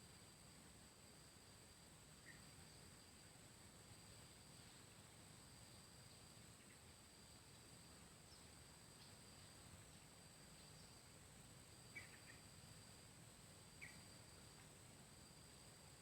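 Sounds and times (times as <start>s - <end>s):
faint chirps: 2.2s - 3.0s, 5.6s - 7.6s, 8.2s - 13.0s, 13.7s - 14.8s.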